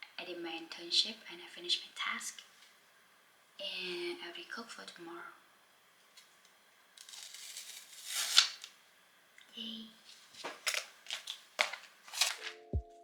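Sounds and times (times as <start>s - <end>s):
rustling and crinkling: 10.0s - 12.6s.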